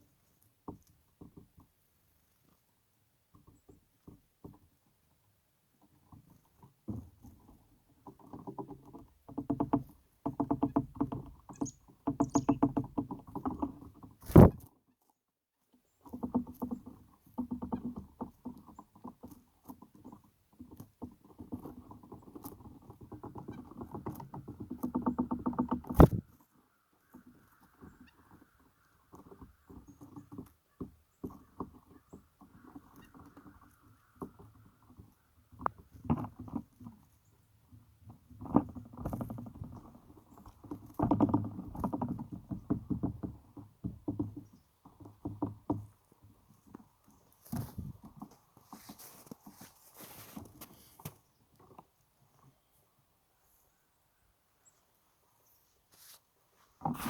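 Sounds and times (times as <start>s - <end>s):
crackling rustling: 47.4s - 51.2s.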